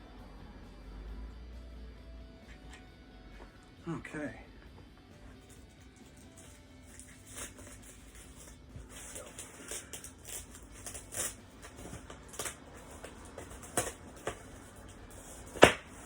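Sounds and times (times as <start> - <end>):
plastic packaging rustling: 5.5 - 16.0.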